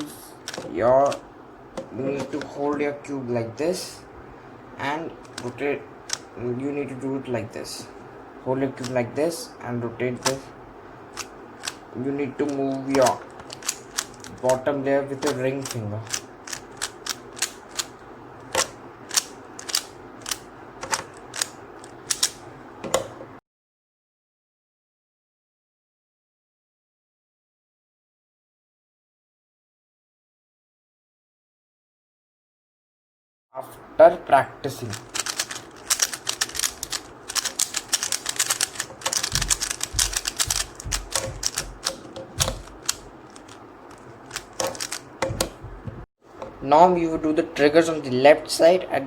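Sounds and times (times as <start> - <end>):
speed cube clicking: 0.4 - 1.2, 5.2 - 6.3, 11.1 - 11.8, 12.4 - 14.6, 15.2 - 22.4, 34.8 - 45.8.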